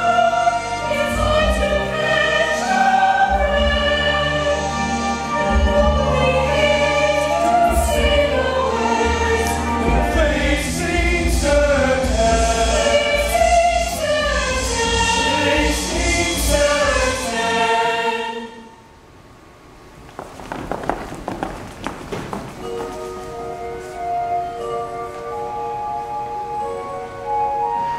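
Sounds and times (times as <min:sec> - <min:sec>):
choir singing: 0:00.0 - 0:19.0.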